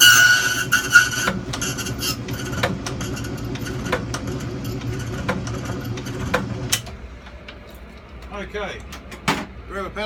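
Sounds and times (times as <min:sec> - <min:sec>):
machine motor humming: 0:01.3 - 0:07.0.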